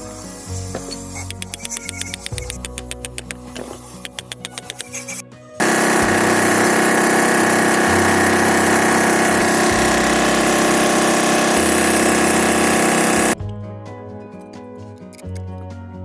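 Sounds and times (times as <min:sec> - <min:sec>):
engine running steadily: 0:05.6 - 0:13.4.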